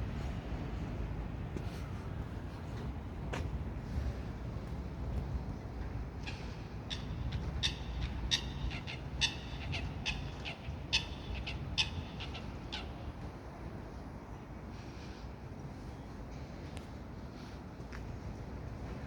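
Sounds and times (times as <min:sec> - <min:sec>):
steady low rumble: 0:00.0 - 0:08.7.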